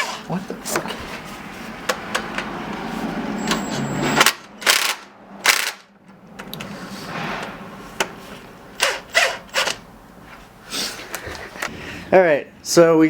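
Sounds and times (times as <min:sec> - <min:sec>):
mechanical rattle: 0:04.6 - 0:05.9.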